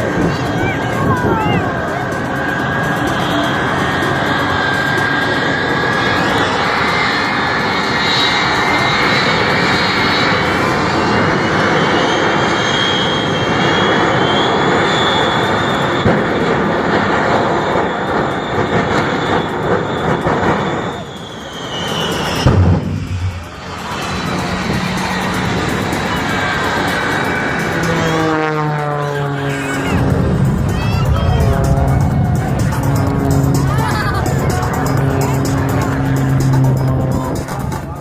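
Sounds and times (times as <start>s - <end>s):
high turbine whistle: 0.0s - 38.0s
jet engines roaring: 0.0s - 38.0s
short low thump: 22.5s - 23.4s.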